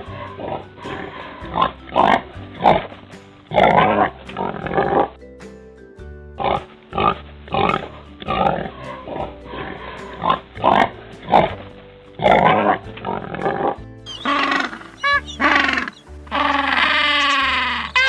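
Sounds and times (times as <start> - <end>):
background music: 0.0 - 18.0.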